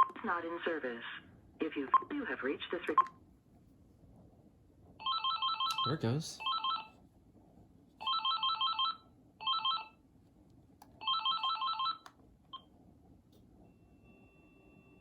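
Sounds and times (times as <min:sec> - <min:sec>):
cordless phone trilling ring: 0:05.0 - 0:05.8, 0:08.1 - 0:10.0, 0:11.0 - 0:12.0.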